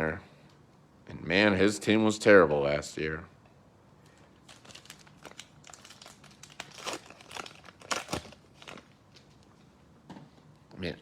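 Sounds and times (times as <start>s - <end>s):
plastic foil wrapper crinkling: 4.1s - 9.4s.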